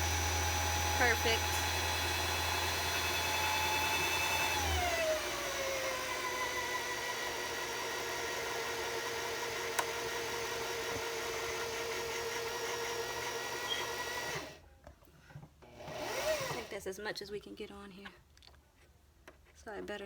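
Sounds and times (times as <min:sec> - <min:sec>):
sewing machine motor whine: 0:00.0 - 0:14.6, 0:15.7 - 0:16.7
click: 0:09.7 - 0:09.9.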